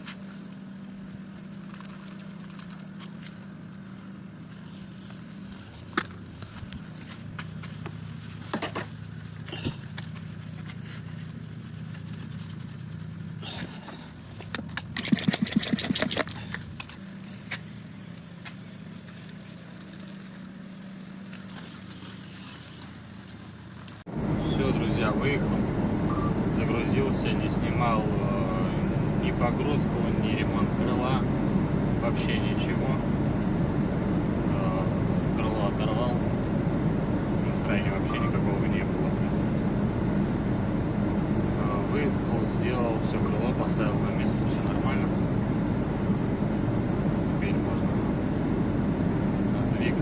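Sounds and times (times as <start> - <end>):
diesel truck engine running: 0.0 - 50.0.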